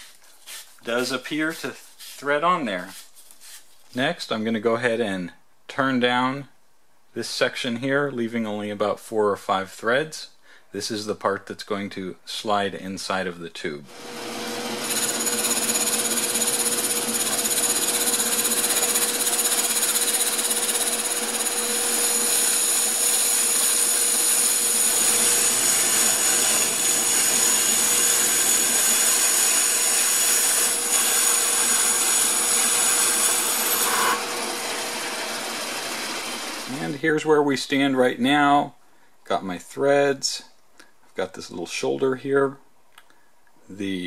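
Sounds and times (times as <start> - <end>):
lathe motor whine: 13.9 - 36.9
cutting tool hiss: 14.0 - 36.9.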